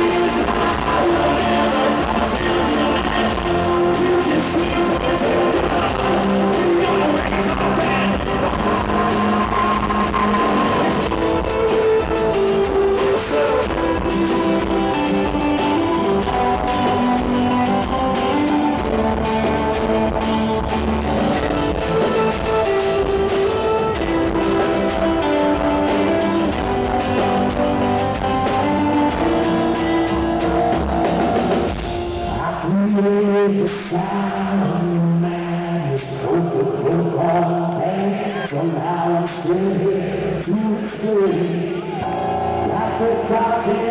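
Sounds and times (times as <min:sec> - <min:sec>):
strummed acoustic guitars: 0:00.0 - 0:32.6
drums: 0:00.0 - 0:43.9.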